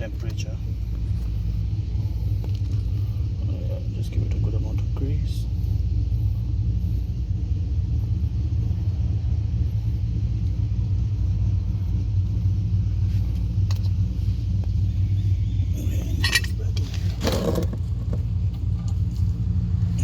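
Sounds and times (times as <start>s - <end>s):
low rumble: 0.0s - 20.0s
metal bolts clicking and scraping: 15.8s - 19.2s.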